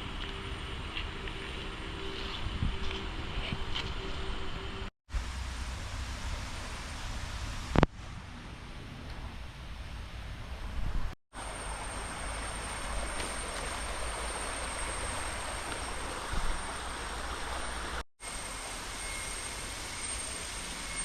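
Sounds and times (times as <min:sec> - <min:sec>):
highway traffic rumble: 0:00.0 - 0:21.0
river water rushing: 0:11.4 - 0:21.0.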